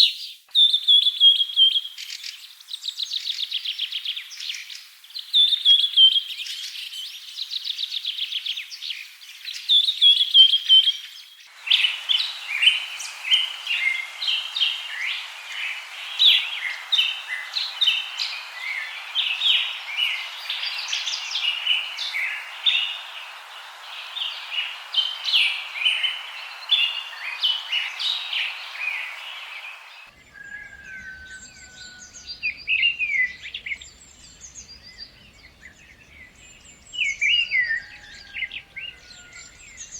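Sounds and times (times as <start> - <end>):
hiss: 11.5 - 39.9
songbirds chirping and singing: 11.5 - 39.9.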